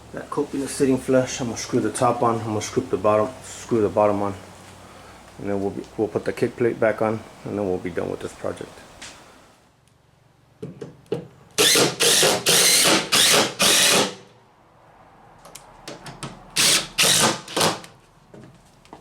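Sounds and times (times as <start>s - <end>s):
impact drill driving screws: 11.6s - 14.3s, 16.6s - 17.9s.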